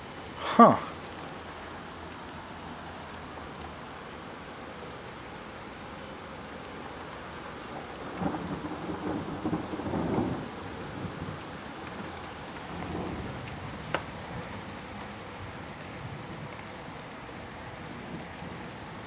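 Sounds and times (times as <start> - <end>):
light rain hiss: 0.0 - 19.0
rolling thunder: 8.2 - 11.5.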